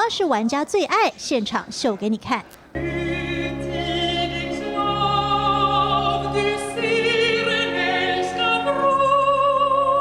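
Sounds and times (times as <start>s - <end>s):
operatic singing: 2.8s - 10.0s.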